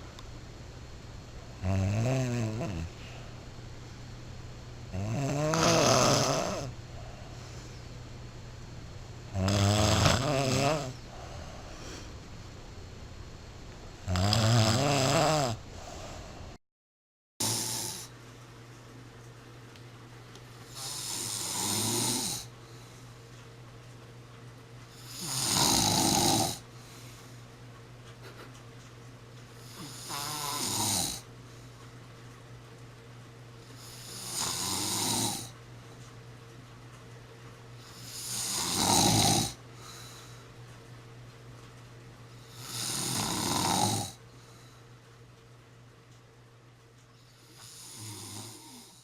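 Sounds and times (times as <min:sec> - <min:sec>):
person snoring: 0:01.5 - 0:03.2, 0:04.9 - 0:07.5, 0:09.3 - 0:12.1, 0:14.0 - 0:16.5, 0:17.4 - 0:18.1, 0:20.7 - 0:22.5, 0:25.0 - 0:26.6, 0:29.6 - 0:31.3, 0:33.8 - 0:35.6, 0:37.8 - 0:39.6, 0:42.4 - 0:44.2, 0:47.3 - 0:49.0.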